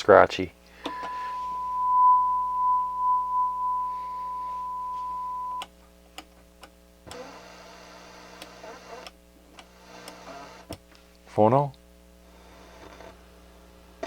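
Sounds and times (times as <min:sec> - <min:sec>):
amplifier hiss and hum: 0:00.1 - 0:07.0
high test tone: 0:00.9 - 0:05.6.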